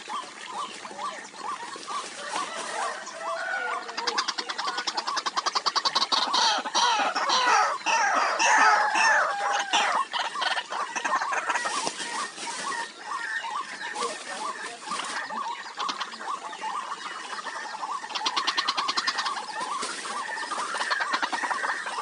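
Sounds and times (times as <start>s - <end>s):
waterhens calling: 0.0s - 22.0s.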